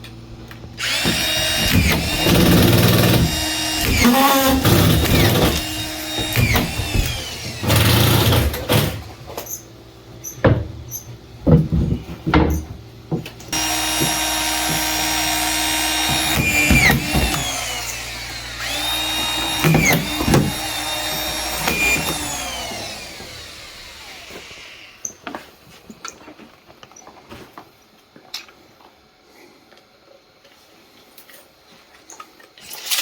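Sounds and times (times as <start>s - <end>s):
power drill driving screws: 0.8s - 9.0s, 13.5s - 25.2s, 32.6s - 33.0s
knocks: 1.0s - 8.9s, 19.4s - 22.3s.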